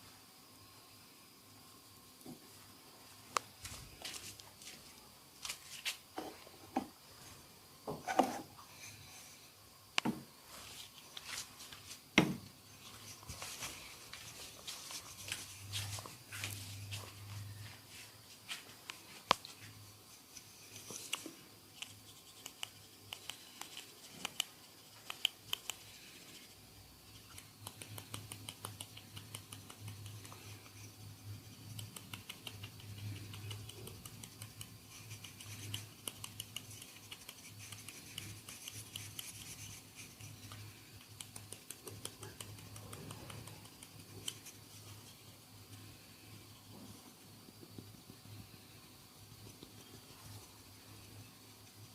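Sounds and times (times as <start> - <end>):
fingers rubbing hair and scalp: 12.8 - 45.5
sharp clicks: 21.0 - 25.9, 27.2 - 30.4, 31.7 - 39.4.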